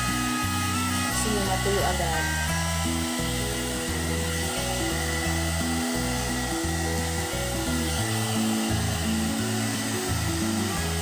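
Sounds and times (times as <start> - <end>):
background music: 0.0 - 11.0
hair dryer rushing with whine: 0.0 - 11.0.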